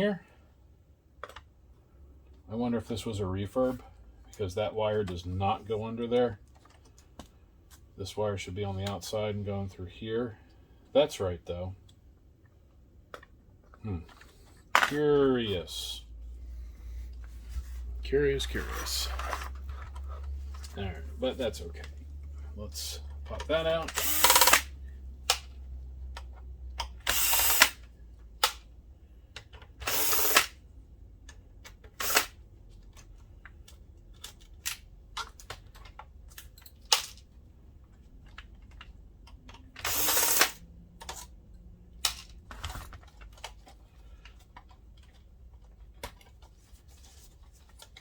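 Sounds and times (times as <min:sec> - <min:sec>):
screws and plastic parts clicking: 0:01.2 - 0:01.5, 0:06.1 - 0:07.8, 0:23.1 - 0:30.6, 0:31.2 - 0:48.0
electric screwdriver running: 0:23.9 - 0:24.8, 0:27.0 - 0:27.8, 0:29.8 - 0:30.6, 0:32.0 - 0:32.4, 0:39.8 - 0:40.6.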